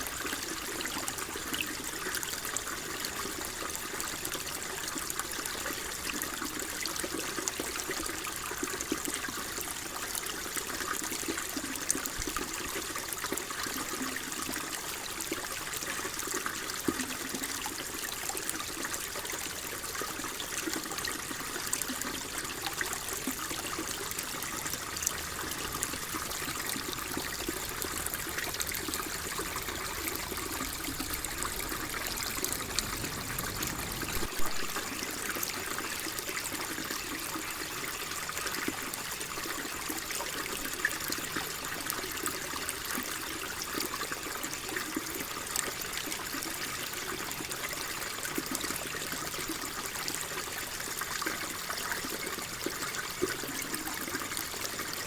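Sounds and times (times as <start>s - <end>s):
water flowing and trickling: 0.0s - 55.0s
small water splashes: 15.6s - 37.3s.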